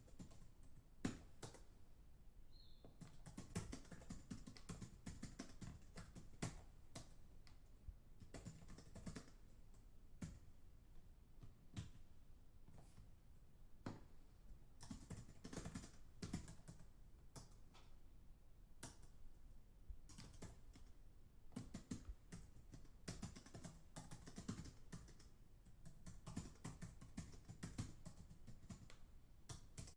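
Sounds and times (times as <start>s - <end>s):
distant keyboard typing: 2.9s - 7.2s, 8.2s - 9.4s, 14.8s - 17.6s, 20.1s - 29.9s.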